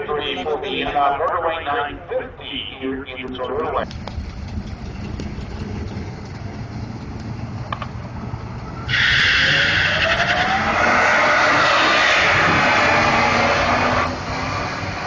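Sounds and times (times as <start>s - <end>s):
drag racing engines revving: 3.8s - 15.0s.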